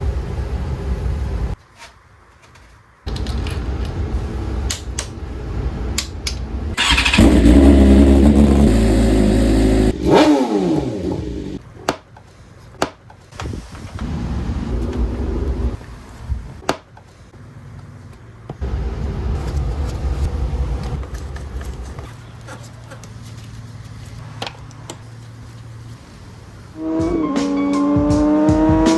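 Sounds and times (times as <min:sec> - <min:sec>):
motorcycle engine revving: 0:06.5 - 0:11.6, 0:26.8 - 0:28.9
exhaust pops: 0:13.4 - 0:16.7.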